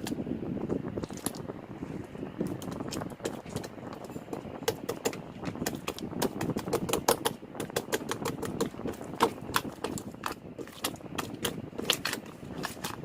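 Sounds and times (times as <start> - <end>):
slime squishing rustle: 0.7 - 4.6, 7.7 - 13.0.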